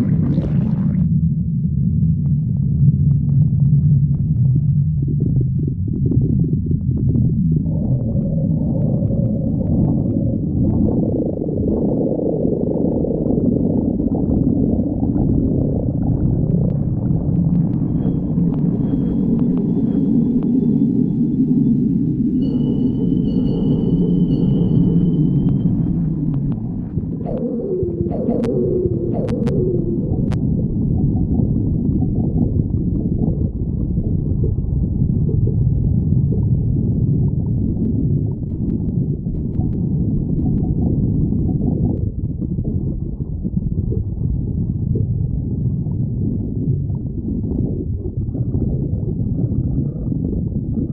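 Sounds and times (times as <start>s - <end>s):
squealing gurgle: 0.0s - 1.0s, 27.1s - 30.4s
stomach growling: 0.0s - 50.9s.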